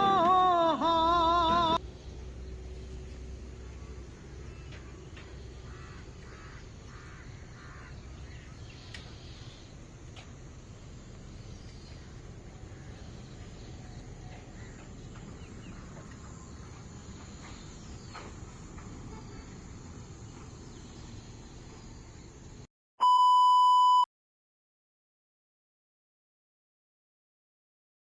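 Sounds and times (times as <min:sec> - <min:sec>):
faint insect chirps: 0:02.0 - 0:14.7
loud electronic beep: 0:23.0 - 0:24.1.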